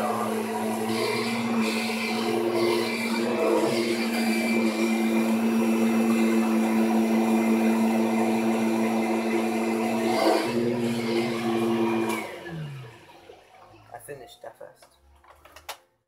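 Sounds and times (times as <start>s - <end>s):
vacuum cleaner running: 0.0s - 13.9s.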